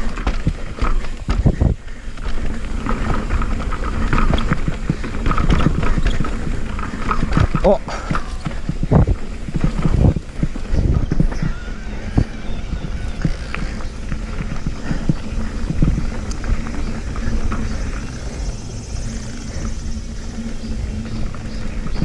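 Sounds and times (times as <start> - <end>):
bike knocking and rattling: 0.0 - 22.0
wind rumble on microphone: 0.0 - 22.0.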